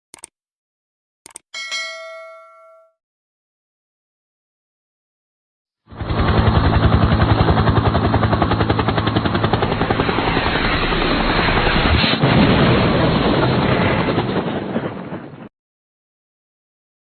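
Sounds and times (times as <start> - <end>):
helicopter rotor chopping: 5.9 - 12.1.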